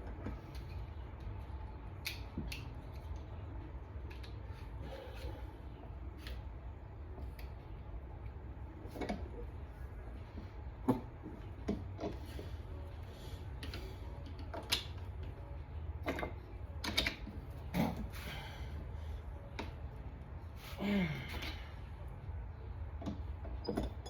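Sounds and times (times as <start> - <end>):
steady low hum: 0.0 - 24.0
metal parts clicking and tapping: 16.0 - 17.4, 23.0 - 24.0.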